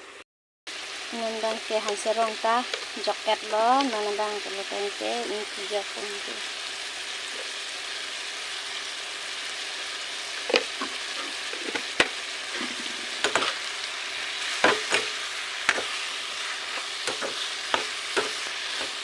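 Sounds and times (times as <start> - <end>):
food sizzling in a pan: 0.0 - 19.0
utensil knocking and scraping pan: 14.5 - 16.0, 16.7 - 19.0.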